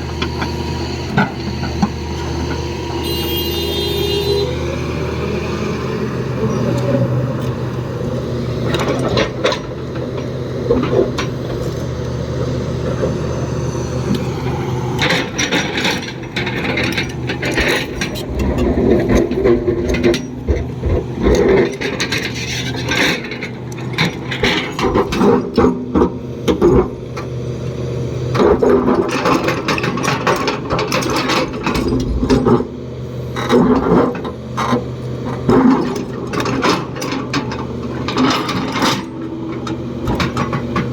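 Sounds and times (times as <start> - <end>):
excavator diesel engine running: 0.0 - 40.9
bucket clanking and scraping: 15.0 - 23.5.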